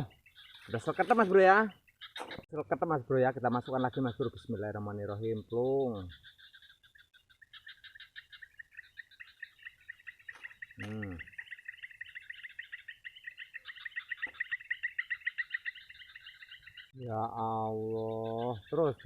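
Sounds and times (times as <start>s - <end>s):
high animal chirps: 0.0s - 2.6s, 3.2s - 19.0s
low falling animal call: 10.3s - 11.4s.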